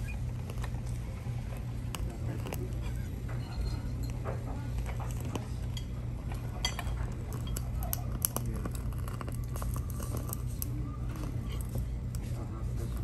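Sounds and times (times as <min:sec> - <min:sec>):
low background hum: 0:00.0 - 0:13.0
cutlery and dishes clinking: 0:02.2 - 0:08.8.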